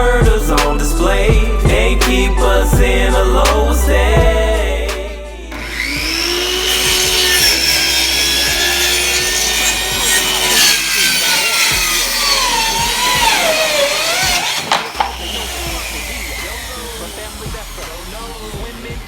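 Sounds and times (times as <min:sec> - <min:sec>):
electric saw cutting wood: 0:05.5 - 0:19.0.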